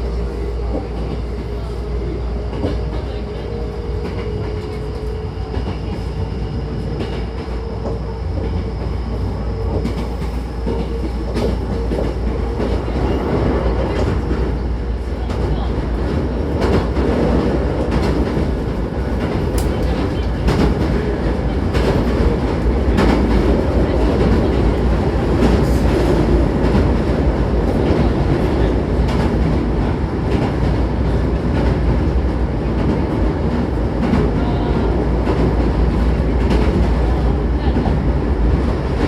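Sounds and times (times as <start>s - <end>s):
train wheels rumbling on rail: 0.0s - 39.0s
rail joint clicks: 6.8s - 14.5s, 15.2s - 38.0s.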